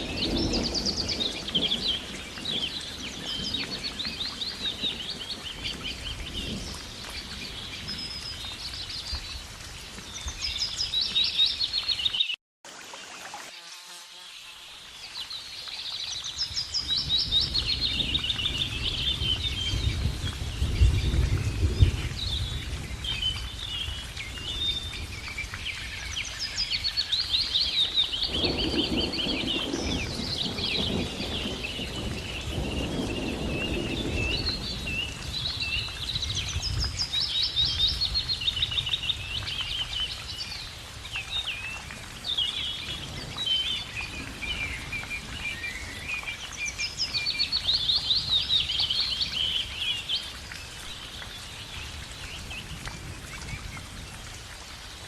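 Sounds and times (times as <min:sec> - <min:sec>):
rain pattering: 0:00.0 - 0:13.4, 0:14.7 - 0:55.0
birds singing in trills: 0:15.2 - 0:54.0.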